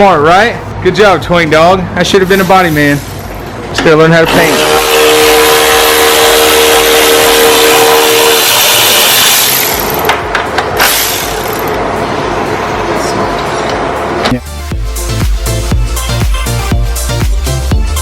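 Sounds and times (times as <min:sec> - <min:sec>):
power tool whining: 0:04.2 - 0:10.2, 0:10.8 - 0:11.8.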